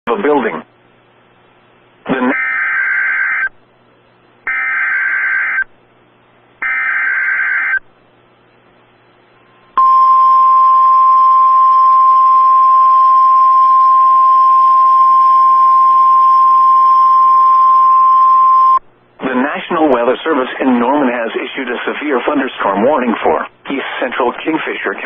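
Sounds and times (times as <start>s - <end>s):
steady single-pitch warning tone: 6.6s - 18.9s
light radio hiss: 19.0s - 25.0s.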